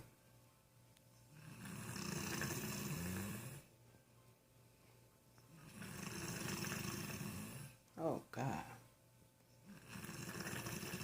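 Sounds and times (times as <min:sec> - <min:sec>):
man snoring: 0:01.4 - 0:03.7, 0:05.6 - 0:07.8, 0:09.7 - 0:11.0.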